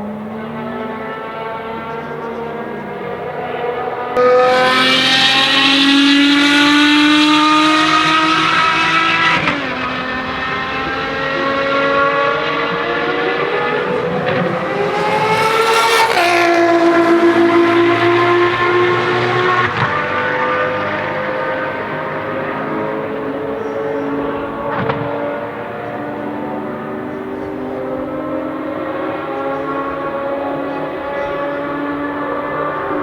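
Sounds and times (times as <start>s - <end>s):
sports car engine revving: 0.0s - 33.0s.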